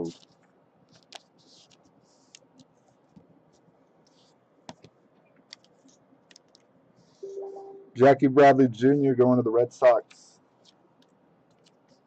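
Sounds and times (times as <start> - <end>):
cards rustling: 0.1 - 4.9
trading cards clicking: 4.7 - 6.7.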